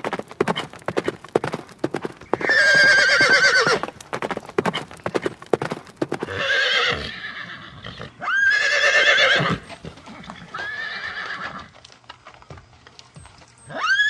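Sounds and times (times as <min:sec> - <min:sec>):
faint hoof clops: 0:00.0 - 0:07.1, 0:09.3 - 0:14.0
horse whinnying: 0:02.2 - 0:03.9, 0:06.1 - 0:11.7, 0:13.7 - 0:14.0.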